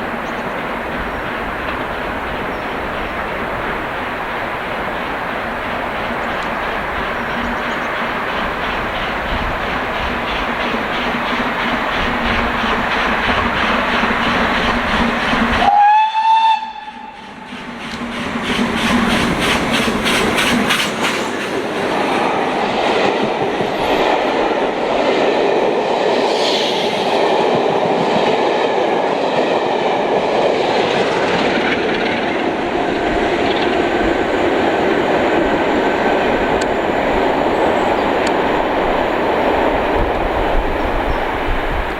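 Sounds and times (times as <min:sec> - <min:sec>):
train wheels rumbling: 0:00.0 - 0:41.9
steam locomotive whistle: 0:15.5 - 0:17.5.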